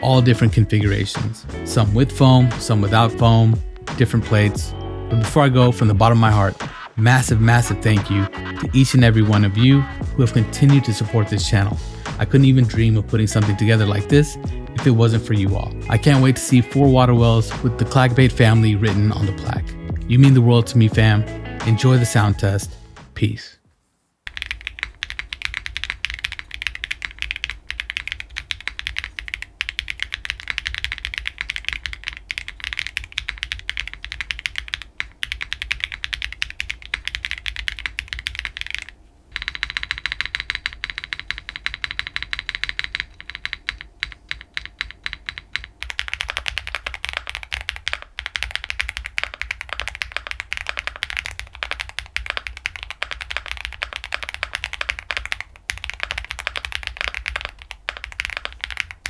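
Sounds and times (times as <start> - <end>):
fast typing on mechanical keyboard: 24.3 - 59.0.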